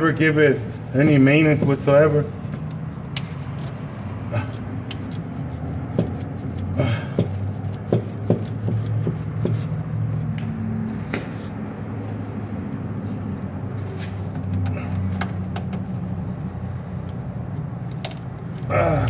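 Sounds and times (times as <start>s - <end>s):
tools clicking and knocking on car parts: 1.4s - 11.4s, 14.3s - 18.7s.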